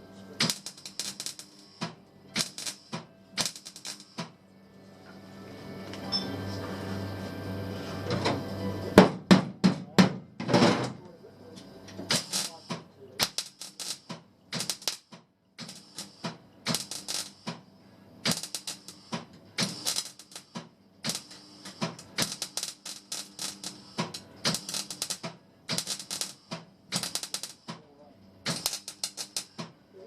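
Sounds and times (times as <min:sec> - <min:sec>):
crackling tack welds: 0:00.4 - 0:04.4, 0:12.0 - 0:30.0.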